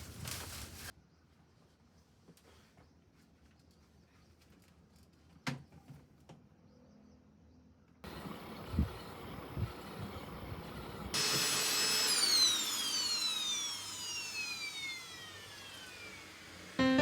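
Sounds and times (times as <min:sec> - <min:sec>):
vacuum cleaner motor whining: 0:08.0 - 0:17.0
piano music: 0:16.8 - 0:17.0.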